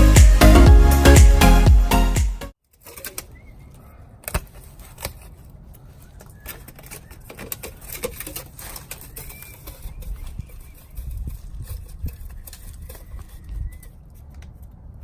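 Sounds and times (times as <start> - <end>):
music: 0.0 - 2.5.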